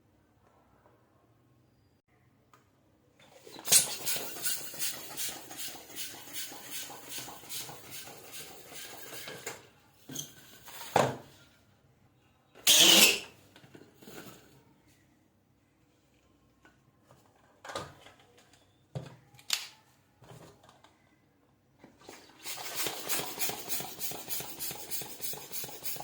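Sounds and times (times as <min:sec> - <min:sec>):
balloon being inflated: 0:12.7 - 0:13.3.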